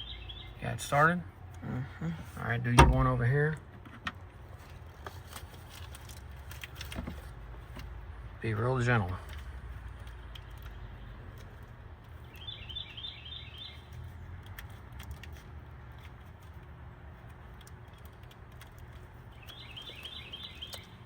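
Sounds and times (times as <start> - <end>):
songbird chirping: 0.0 - 1.3, 10.2 - 14.1, 18.9 - 21.0
steady low hum: 0.0 - 5.4.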